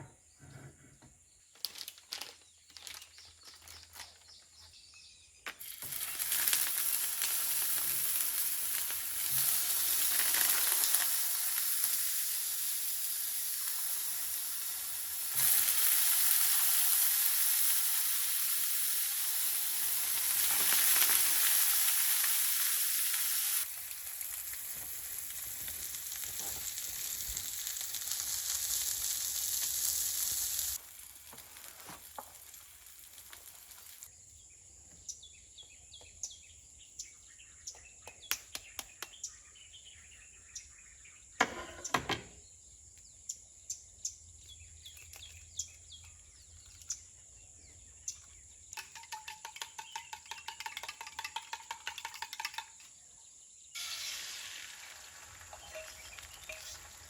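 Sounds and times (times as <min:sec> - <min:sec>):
food sizzling in a frying pan: 0:05.6 - 0:34.1, 0:53.8 - 0:57.0.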